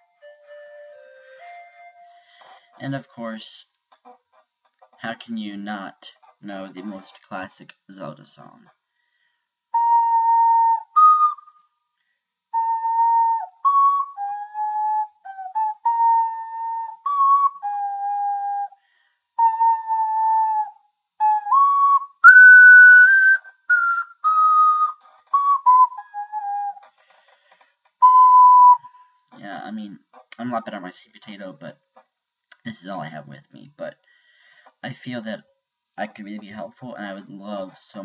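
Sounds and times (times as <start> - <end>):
slow ocarina melody: 0.0 - 2.8, 9.7 - 11.7, 12.5 - 18.8, 19.4 - 26.8, 28.0 - 29.2.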